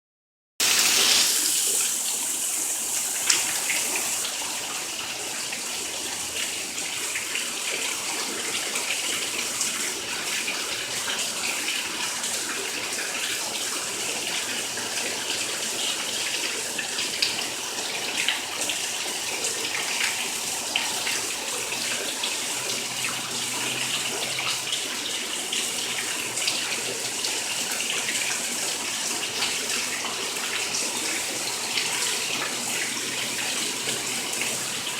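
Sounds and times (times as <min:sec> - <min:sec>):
heavy rain: 0:00.6 - 0:06.8, 0:31.4 - 0:34.9
drips and splashes: 0:00.6 - 0:34.9.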